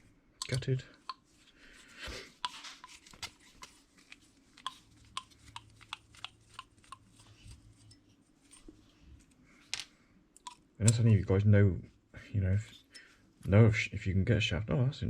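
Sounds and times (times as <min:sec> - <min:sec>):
light clicks and taps: 0:00.4 - 0:01.2, 0:02.4 - 0:11.1.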